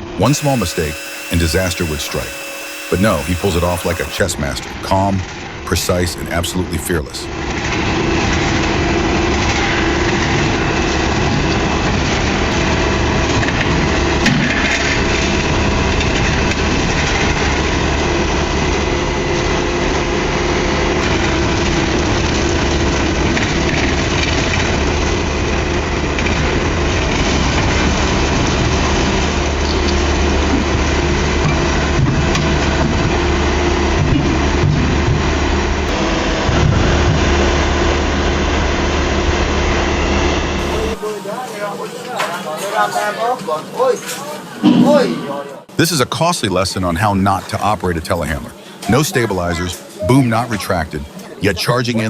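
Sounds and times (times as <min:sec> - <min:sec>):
heavy machine engine running: 0:00.0 - 0:04.6.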